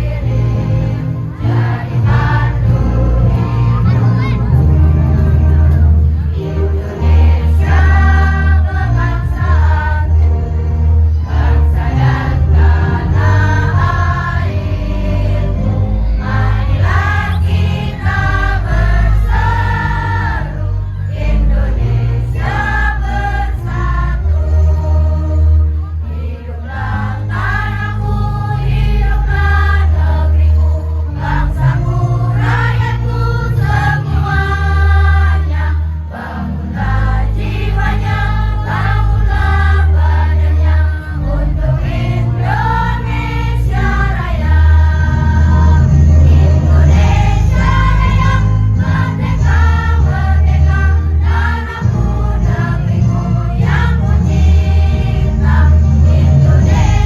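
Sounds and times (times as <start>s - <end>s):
choir singing in unison: 0.0s - 57.0s
loud accompaniment with heavy bass: 0.0s - 57.0s.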